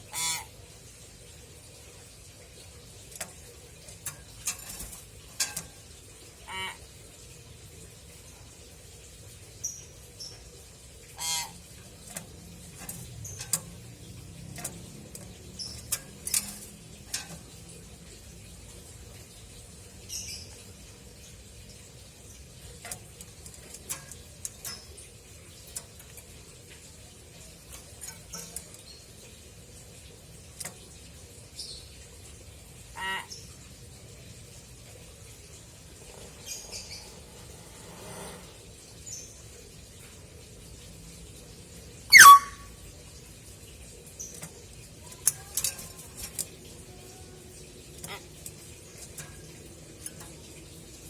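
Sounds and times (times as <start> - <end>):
bird chirps and clicks: 2.6 - 5.9, 11.7 - 29.4, 42.1 - 42.6, 43.8 - 51.0
bird calls: 42.1 - 42.8.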